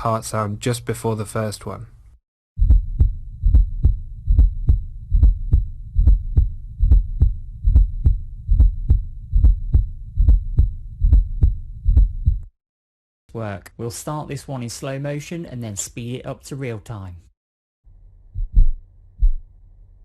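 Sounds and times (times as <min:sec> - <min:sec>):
heartbeat through stethoscope: 0:02.6 - 0:12.5, 0:18.3 - 0:19.5
low steady rumble: 0:02.6 - 0:12.5, 0:17.9 - 0:20.0.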